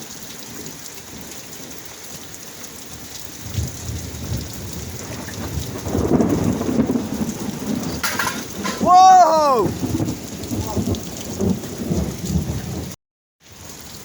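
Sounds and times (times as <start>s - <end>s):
steady rain falling: 0.0s - 14.0s
thunder rumbling: 3.4s - 13.0s.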